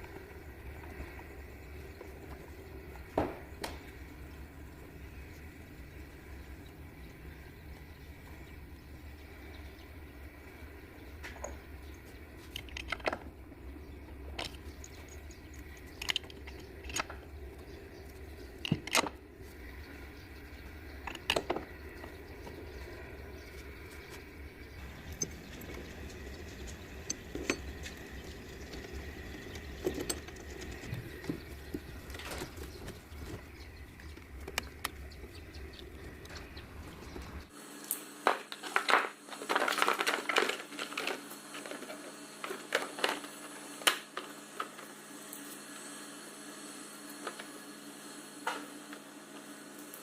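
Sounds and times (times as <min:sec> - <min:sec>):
low hum: 0:00.0 - 0:37.9
hand tools clinking: 0:24.8 - 0:32.9.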